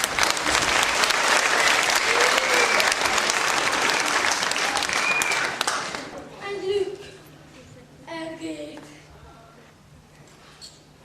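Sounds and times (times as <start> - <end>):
audience applauding: 0.0 - 6.2.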